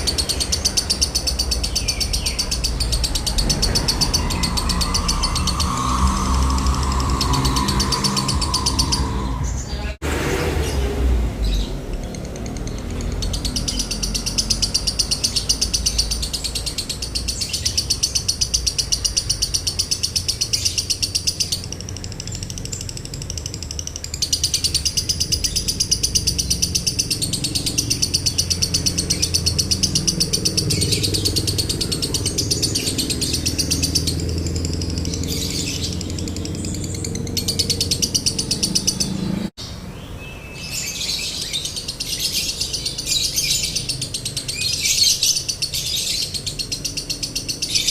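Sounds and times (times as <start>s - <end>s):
lovebird chattering trill: 0.0s - 9.1s, 12.4s - 39.2s.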